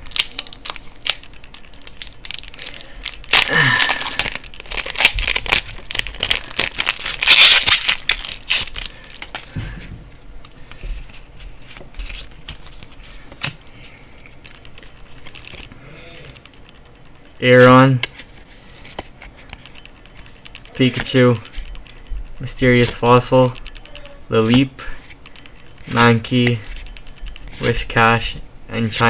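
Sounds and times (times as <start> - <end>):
foil wrapper tearing and crinkling: 0.0 - 9.5
clicks and rustles of handling: 10.4 - 27.9.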